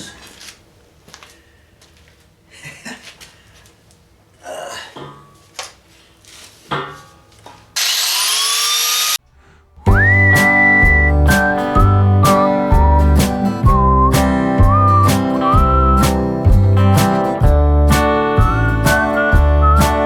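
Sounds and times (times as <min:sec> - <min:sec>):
handheld power tool whirring: 0:07.8 - 0:09.2
acoustic guitar music: 0:09.8 - 0:20.0
whistled note: 0:09.9 - 0:16.2, 0:18.4 - 0:20.0.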